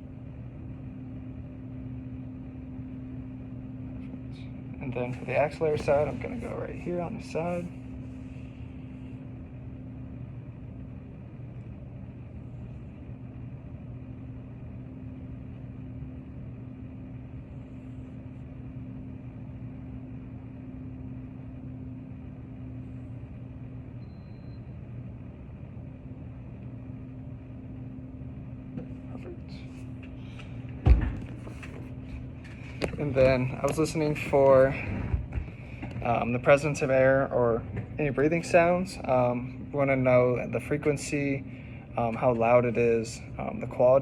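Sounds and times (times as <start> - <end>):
low mechanical hum: 0.0 - 44.0.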